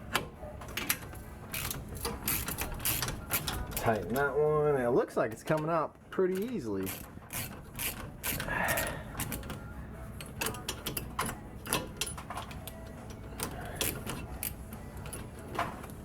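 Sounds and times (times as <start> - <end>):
ratchet wrench clicking: 1.5 - 3.9, 6.8 - 9.6, 10.3 - 15.2.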